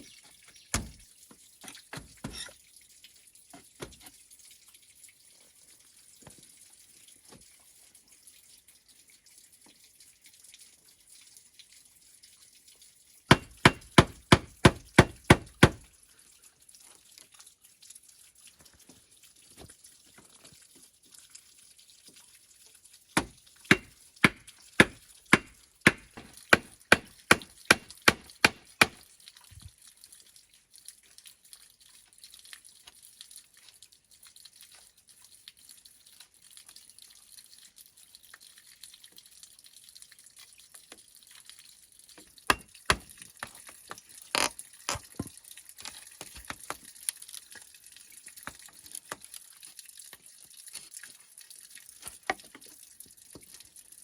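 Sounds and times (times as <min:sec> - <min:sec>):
tool striking bamboo: 0:00.7 - 0:01.0, 0:13.3 - 0:15.8, 0:23.2 - 0:29.0, 0:42.5 - 0:43.2.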